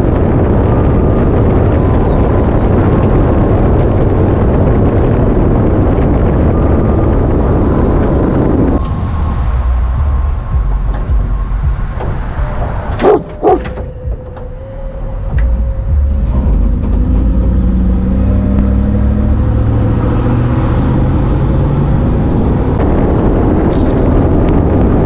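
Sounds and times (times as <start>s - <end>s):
vehicle engine and road noise: 0.0s - 25.0s
dog barking: 13.0s - 13.7s.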